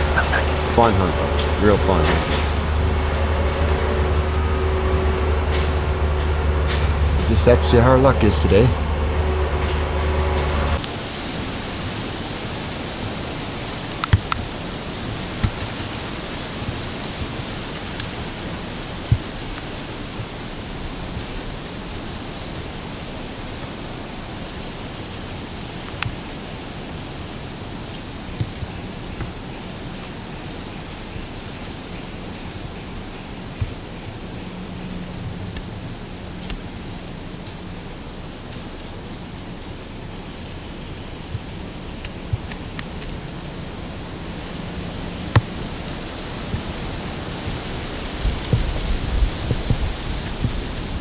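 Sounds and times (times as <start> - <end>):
even hiss: 0.0 - 51.0
insects droning: 0.0 - 51.0.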